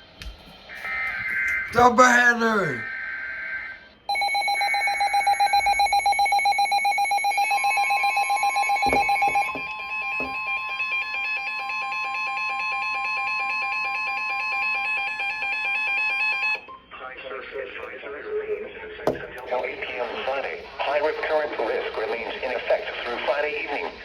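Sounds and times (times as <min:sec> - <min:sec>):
steady warning alarm tone: 0:00.7 - 0:16.7
warbling alarm: 0:00.7 - 0:16.7
rapidly pulsing alarm tone: 0:00.8 - 0:16.6.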